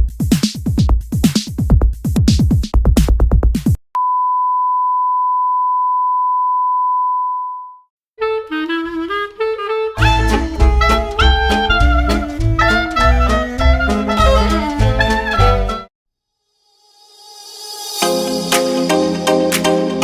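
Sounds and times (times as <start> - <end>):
jazzy music with horns: 8.2 - 15.9
electronic music with pounding beat: 10.0 - 15.8.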